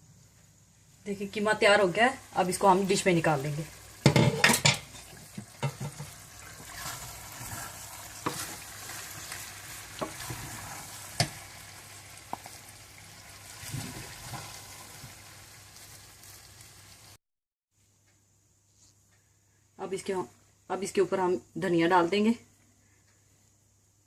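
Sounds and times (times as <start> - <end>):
hot oil sizzling: 0.1 - 17.2
spoon scraping a pot: 4.1 - 9.4.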